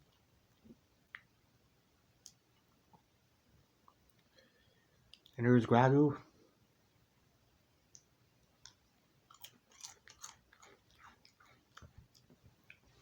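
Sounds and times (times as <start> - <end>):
crackers being chewed: 8.0 - 13.0.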